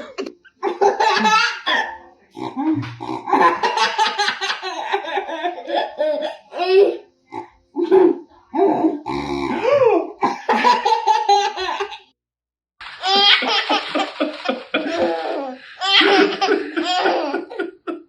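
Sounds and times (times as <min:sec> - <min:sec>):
baby laughing: 0:00.0 - 0:01.9, 0:10.5 - 0:12.0, 0:12.8 - 0:18.0.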